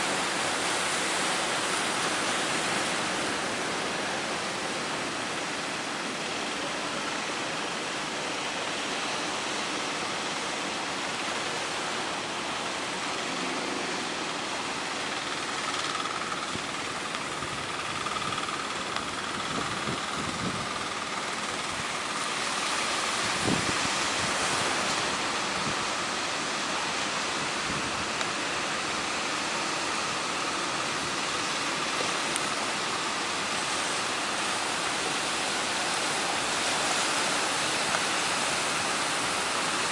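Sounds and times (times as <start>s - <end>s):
sea waves: 0.0s - 39.9s
strong wind: 16.2s - 32.6s.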